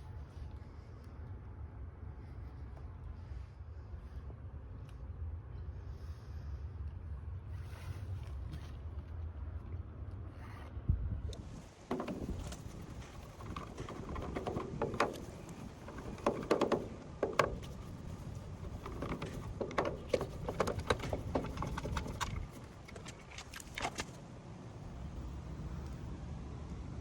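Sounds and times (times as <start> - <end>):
hands handling tools and parts: 11.4 - 24.2.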